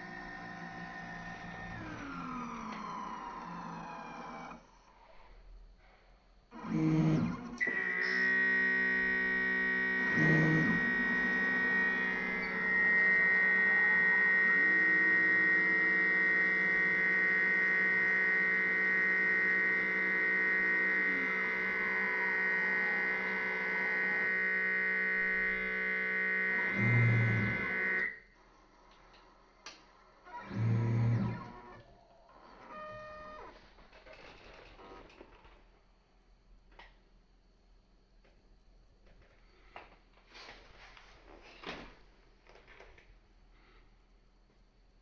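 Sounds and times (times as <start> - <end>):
robot arm motors whining: 0.0 - 5.6, 6.5 - 35.3.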